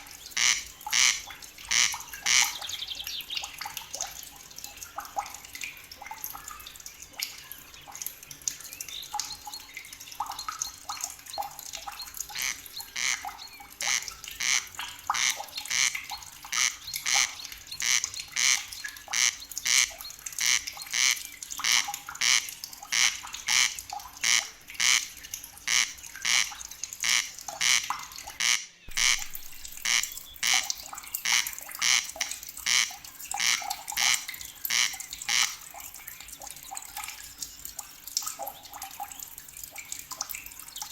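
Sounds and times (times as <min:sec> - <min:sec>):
high sharp animal call: 0:25.7 - 0:30.7.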